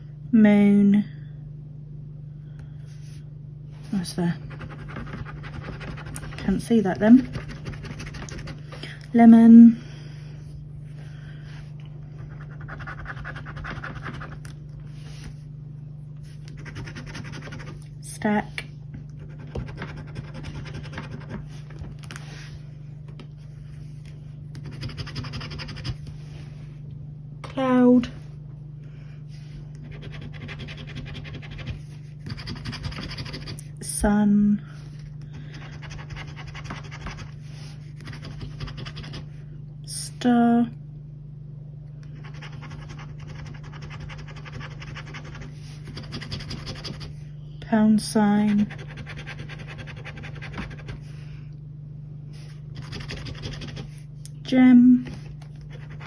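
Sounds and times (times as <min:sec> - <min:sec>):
steady low hum: 0:00.0 - 0:56.0
scratchcard being scratched: 0:16.6 - 0:17.8, 0:24.6 - 0:26.0, 0:29.9 - 0:33.6, 0:42.2 - 0:47.1, 0:52.8 - 0:53.9.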